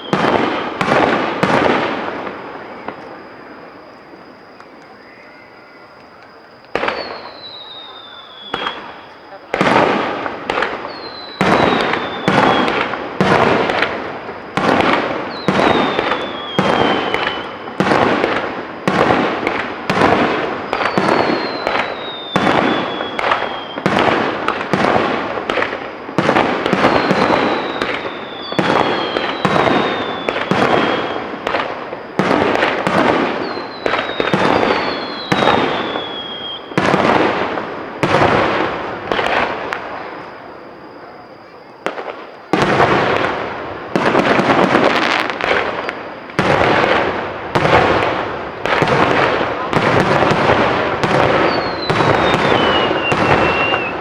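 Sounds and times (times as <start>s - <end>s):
falling firework whistles: 0.0s - 54.0s
fireworks booming with echoes: 0.0s - 54.0s.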